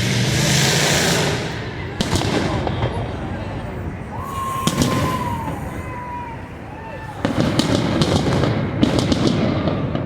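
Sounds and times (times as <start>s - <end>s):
fireworks crackling: 0.0s - 10.0s
loud firework bang: 4.2s - 6.3s, 7.1s - 10.0s.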